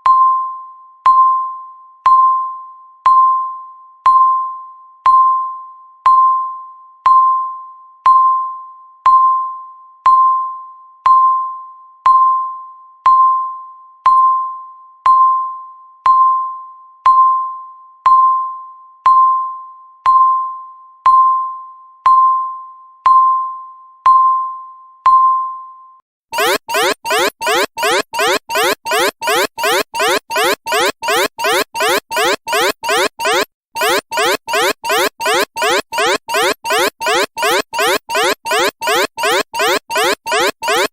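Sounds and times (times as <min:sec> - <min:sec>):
alarm with rising sweeps: 0:26.4 - 0:40.9
timer beeping: 0:26.4 - 0:40.9.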